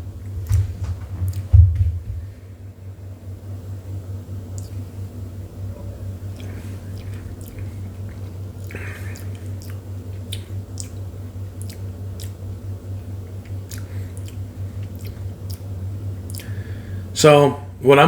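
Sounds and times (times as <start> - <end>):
steady low hum: 0.0 - 18.0
wet mouth clicks and smacks: 4.5 - 4.8, 6.3 - 12.4, 13.4 - 15.7, 16.3 - 16.6.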